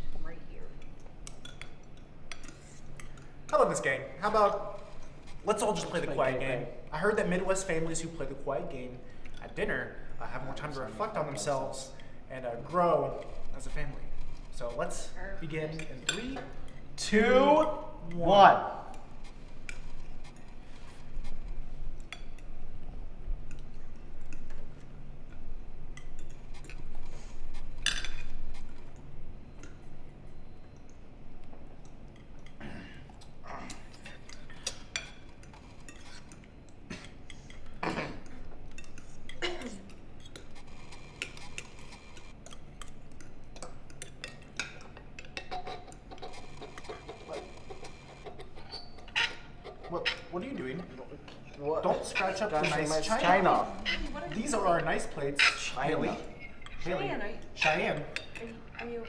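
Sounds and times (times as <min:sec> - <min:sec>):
cutlery clinking on plates: 0:00.8 - 0:03.8, 0:15.8 - 0:17.8, 0:26.0 - 0:31.0, 0:31.6 - 0:57.0, 0:57.6 - 0:58.9.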